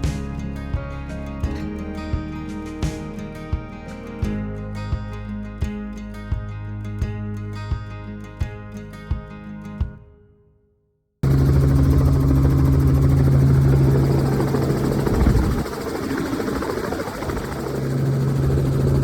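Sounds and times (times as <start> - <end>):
helicopter rotor drone: 11.2 - 19.0.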